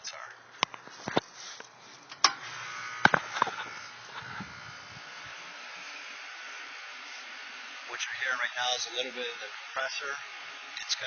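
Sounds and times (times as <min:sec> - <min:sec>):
air conditioner running buzz: 0:00.0 - 0:11.0
air conditioner clicks: 0:00.6 - 0:03.7.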